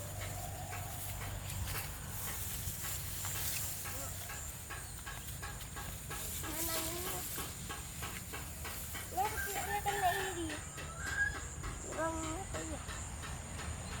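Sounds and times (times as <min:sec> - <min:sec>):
distant chicken call: 0:09.1 - 0:12.4.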